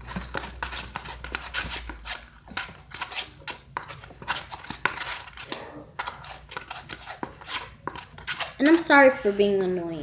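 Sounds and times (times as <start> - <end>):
slime squelching in a bowl: 0.0 - 10.0.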